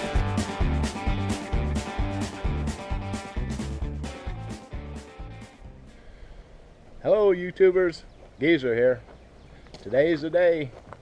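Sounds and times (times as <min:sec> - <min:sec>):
country-rock music with guitar: 0:00.0 - 0:06.0.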